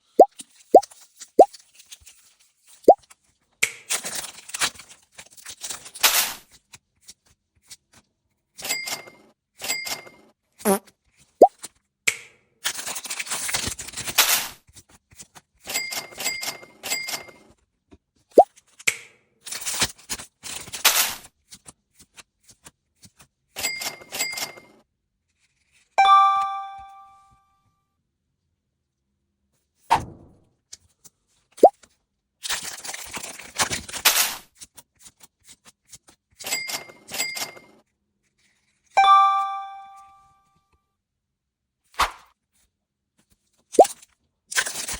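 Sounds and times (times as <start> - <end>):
bell-like ding: 26.0 - 27.3, 39.0 - 40.4
brief ringing tone: 26.0 - 27.3, 39.0 - 40.4.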